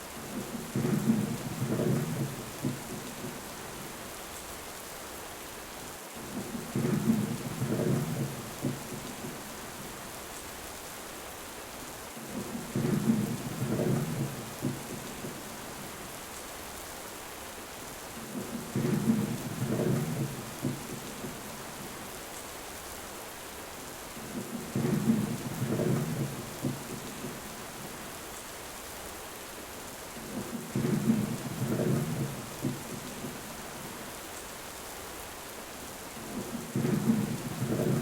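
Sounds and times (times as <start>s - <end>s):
heavy rain: 0.0s - 38.0s
thunder rumbling: 36.2s - 38.0s.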